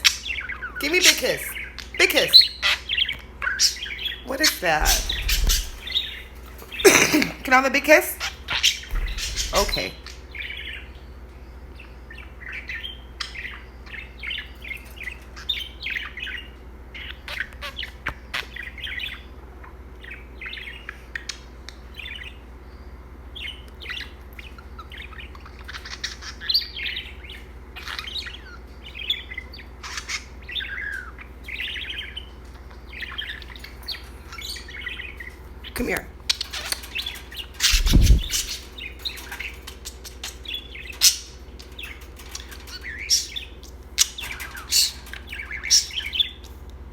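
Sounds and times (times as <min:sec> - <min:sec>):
budgerigar chattering: 0:00.0 - 0:10.0, 0:33.0 - 0:42.0.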